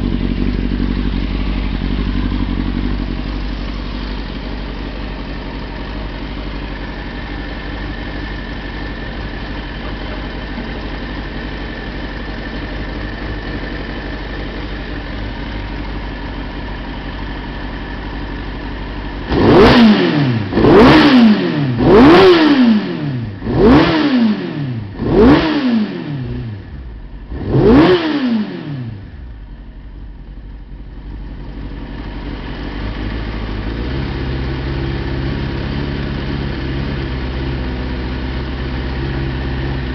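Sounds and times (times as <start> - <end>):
motorcycle engine idling: 0.0 - 39.9
engine revving: 19.2 - 29.2.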